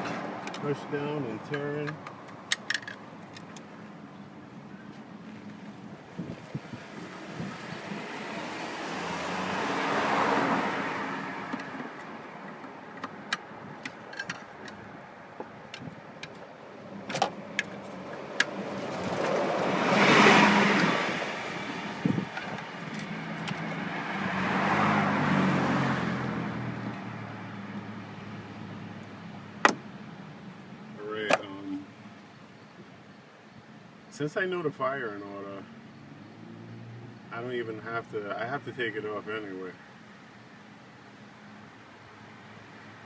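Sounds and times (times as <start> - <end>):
cars passing by: 0.0 - 43.0
small clicks and taps on engine: 1.5 - 3.7, 11.5 - 16.5.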